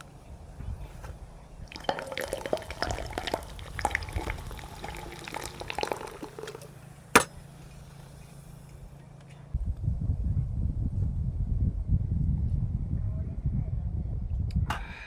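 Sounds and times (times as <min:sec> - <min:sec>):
liquid handling: 0:01.6 - 0:07.5
glass clinking: 0:01.7 - 0:06.6, 0:07.2 - 0:07.4
sharp knock: 0:07.2 - 0:07.4.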